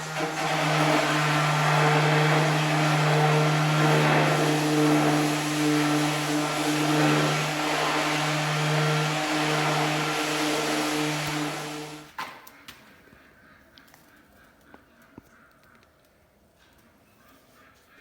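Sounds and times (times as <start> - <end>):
power tool motor humming: 0.0 - 12.1.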